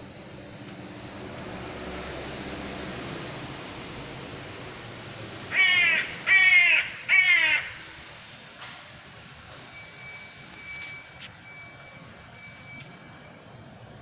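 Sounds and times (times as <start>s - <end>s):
crow cawing: 5.5s - 7.9s.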